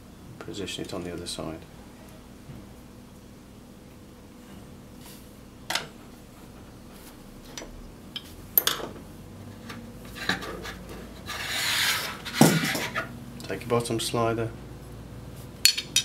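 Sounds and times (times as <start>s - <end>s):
metal part scraping: 10.0s - 13.1s.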